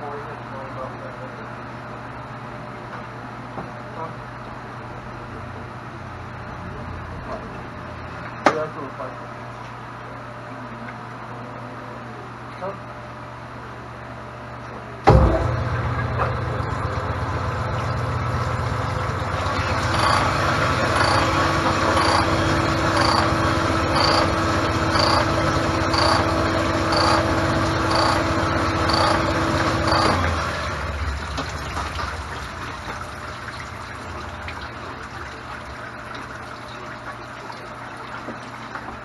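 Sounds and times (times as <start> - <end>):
cylinder boring machine motor: 15.1 - 31.2.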